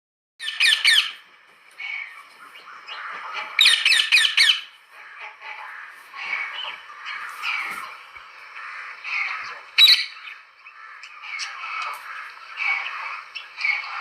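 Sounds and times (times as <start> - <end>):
parrot chattering calls: 0.4 - 1.2, 2.9 - 7.7, 8.6 - 14.0
parrot screeching: 3.6 - 4.7, 8.6 - 11.9.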